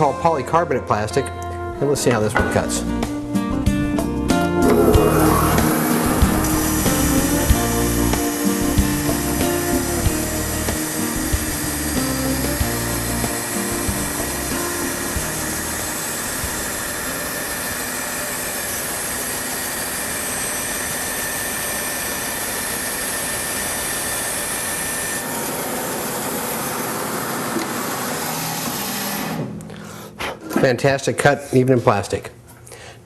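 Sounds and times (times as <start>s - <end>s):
bandsaw cutting plastic: 4.6s - 29.8s.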